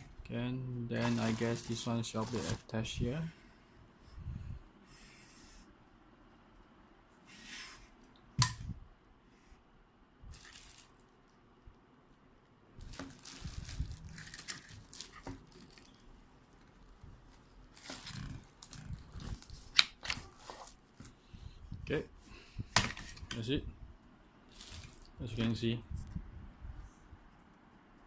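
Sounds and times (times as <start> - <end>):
plastic parts rustling and scraping: 1.0 - 2.8, 10.3 - 11.2, 12.8 - 21.2, 22.6 - 23.4, 24.5 - 25.6.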